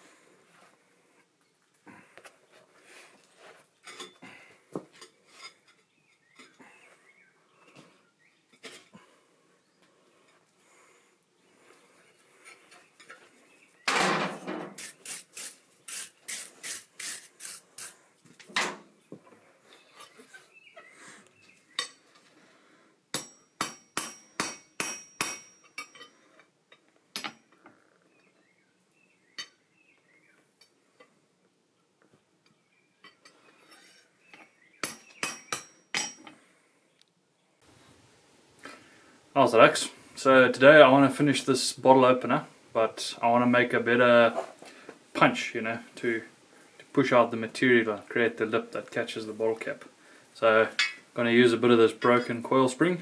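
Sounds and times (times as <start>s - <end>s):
hammer striking steel on anvil: 23.1s - 26.0s, 34.8s - 36.2s.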